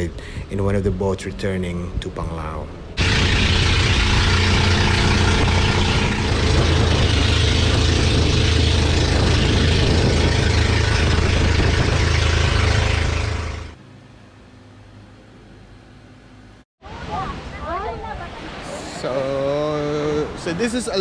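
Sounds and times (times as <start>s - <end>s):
motor boat engine drone: 2.8s - 16.6s
rushing water noise: 2.9s - 13.8s, 16.8s - 21.0s.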